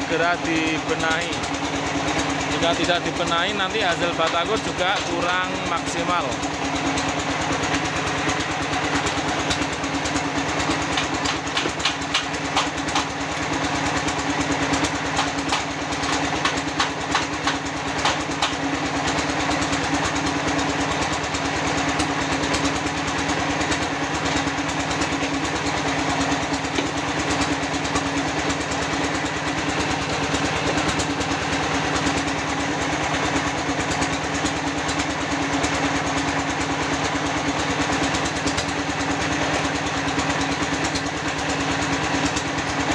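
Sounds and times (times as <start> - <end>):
small engine running: 0.0 - 42.9.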